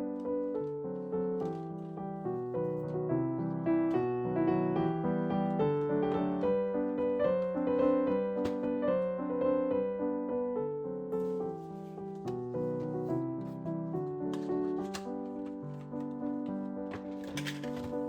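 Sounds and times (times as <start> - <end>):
gentle piano music: 0.0 - 18.0.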